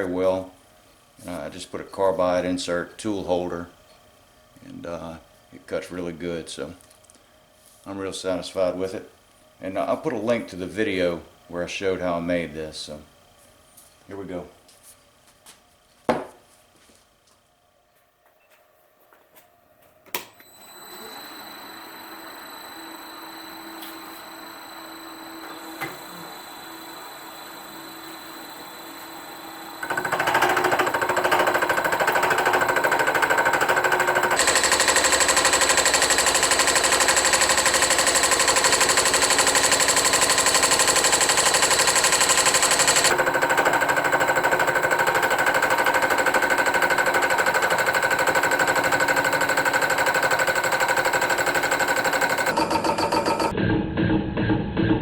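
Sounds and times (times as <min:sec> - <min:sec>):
milling machine spindle running: 0:20.6 - 0:53.5
cutter hammering on metal: 0:29.8 - 0:53.5
music: 0:53.5 - 0:55.0.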